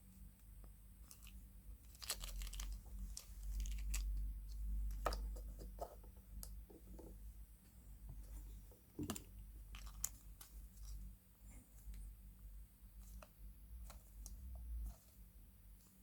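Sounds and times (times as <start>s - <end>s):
small clicks and crackles: 1.0s - 5.4s, 9.1s - 11.1s
wrapper crinkling and tearing: 1.1s - 4.2s, 9.7s - 10.2s.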